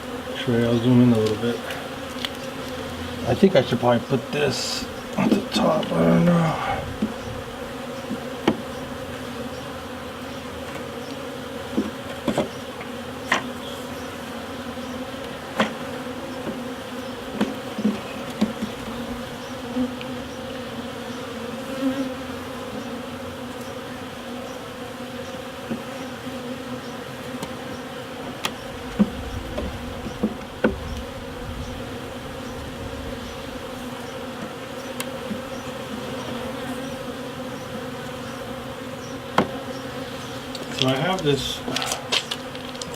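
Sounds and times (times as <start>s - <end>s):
honeybees buzzing: 0.0s - 42.9s
wooden hive boxes knocking: 0.7s - 7.4s, 8.0s - 8.8s, 10.6s - 13.6s, 15.2s - 20.2s, 25.6s - 26.0s, 27.3s - 37.0s, 38.0s - 39.9s, 40.5s - 42.9s.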